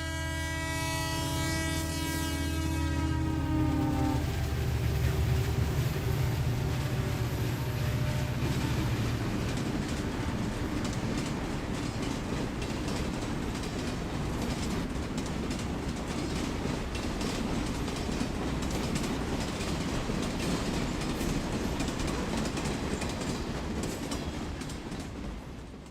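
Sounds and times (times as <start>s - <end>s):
train wheels rumbling on rails: 0.0s - 25.9s
rail joint clicks: 3.2s - 25.9s.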